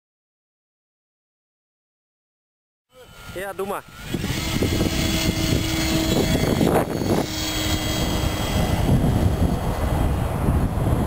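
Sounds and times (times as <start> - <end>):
model glider motor and propeller: 2.9 - 11.0
wind rumble on microphone: 3.0 - 11.0.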